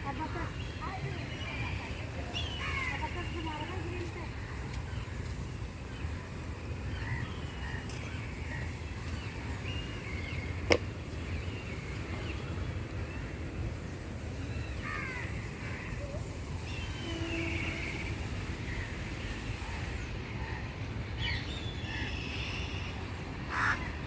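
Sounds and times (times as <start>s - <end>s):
birds chirping and calling: 0.0s - 13.4s
crows cawing: 14.8s - 16.0s, 23.5s - 24.0s.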